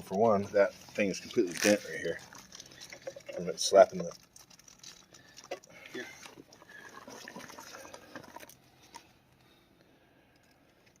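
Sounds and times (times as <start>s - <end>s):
metal parts scraping and clicking: 1.4s - 5.7s.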